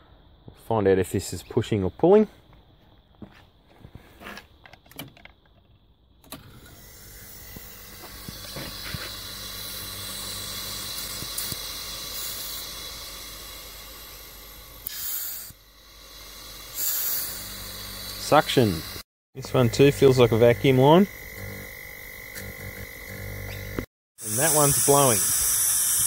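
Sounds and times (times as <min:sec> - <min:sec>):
pump humming: 0:06.3 - 0:26.0
air hissing through hose: 0:06.5 - 0:21.0, 0:23.0 - 0:26.0.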